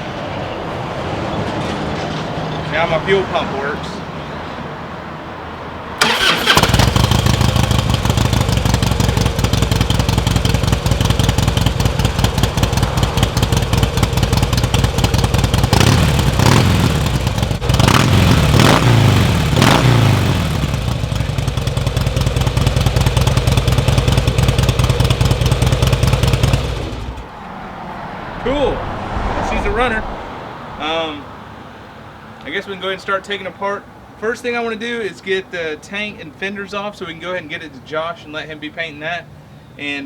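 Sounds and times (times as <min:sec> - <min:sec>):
motorcycle engine starting and idling: 0:06.0 - 0:27.5
engine throttle blips: 0:06.0 - 0:31.3.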